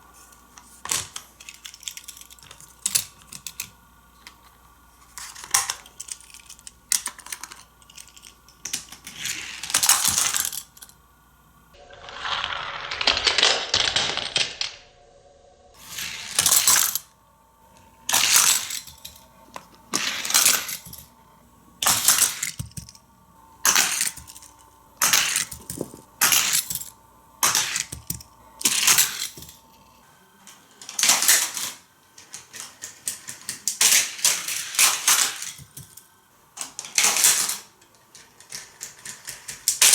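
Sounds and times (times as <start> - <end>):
toy cars rattling on plastic track: 0.8 - 3.8, 5.0 - 10.9, 12.1 - 14.8, 15.8 - 17.1, 18.1 - 19.2, 19.9 - 21.1, 21.8 - 23.0, 23.6 - 29.6, 30.8 - 36.0, 36.6 - 39.9.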